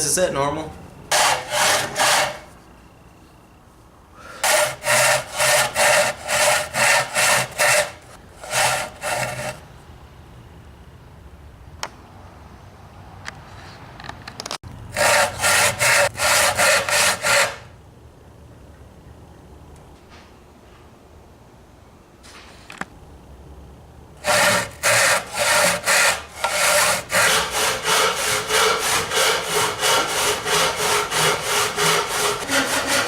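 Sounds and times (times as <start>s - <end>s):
hand saw cutting wood: 1.1s - 2.5s, 4.3s - 9.6s, 15.0s - 17.7s, 24.2s - 33.0s.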